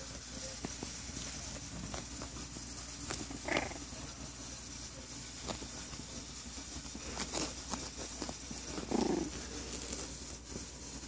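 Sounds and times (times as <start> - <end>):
puppies scuffling: 0.0 - 11.0
puppy grunt: 3.4 - 3.8, 8.8 - 9.4.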